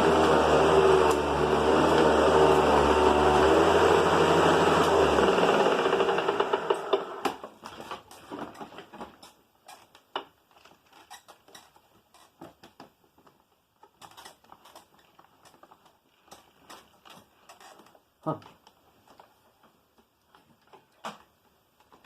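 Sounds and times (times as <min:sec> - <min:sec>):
vacuum cleaner motor: 0:00.0 - 0:07.4.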